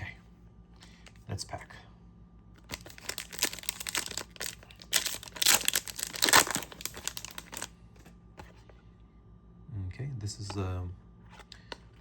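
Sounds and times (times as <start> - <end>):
plastic wrapper crinkling and tearing: 2.6 - 7.7.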